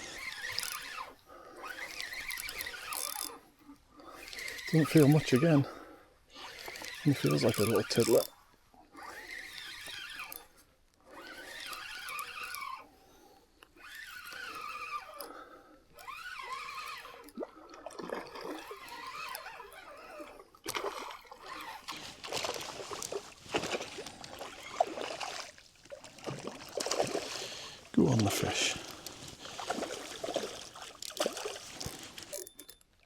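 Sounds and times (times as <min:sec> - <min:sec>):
fish splashing in water: 0:20.7 - 0:27.8, 0:29.4 - 0:31.9.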